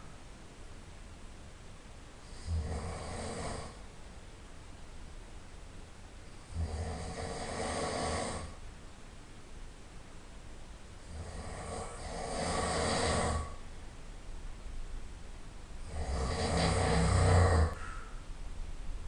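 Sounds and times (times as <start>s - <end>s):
quiet breathing: 2.2s - 3.9s, 15.8s - 18.4s
person snoring: 2.3s - 3.8s, 6.5s - 8.6s, 11.1s - 13.6s, 15.8s - 18.1s.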